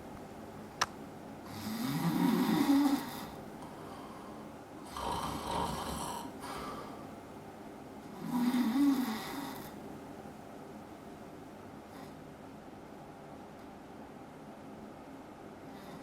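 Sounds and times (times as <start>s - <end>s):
man snoring: 1.5s - 3.4s, 4.8s - 6.9s, 8.2s - 9.8s.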